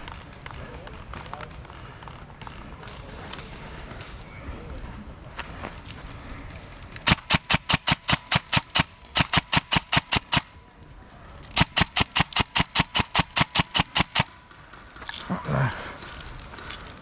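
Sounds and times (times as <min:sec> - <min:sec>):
airsoft gun rapid shots: 0:07.0 - 0:10.5, 0:11.6 - 0:14.4.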